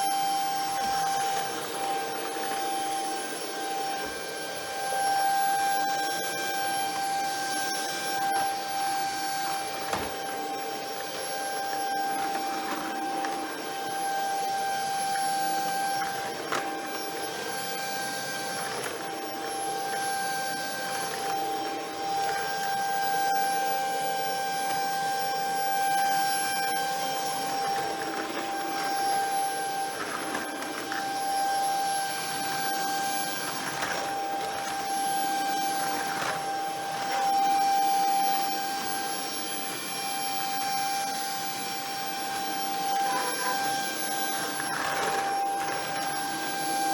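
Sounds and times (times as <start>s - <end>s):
stick vacuum running: 0.0s - 46.9s.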